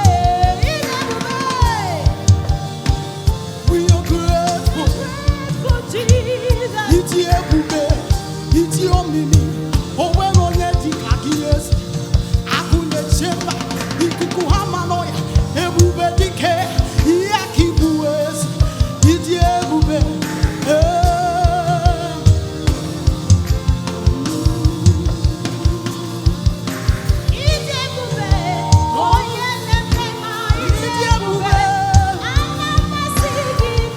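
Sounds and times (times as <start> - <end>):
choir singing gospel: 0.0 - 33.9
drum kit beat: 0.0 - 33.9
sustained bass line: 0.0 - 33.9.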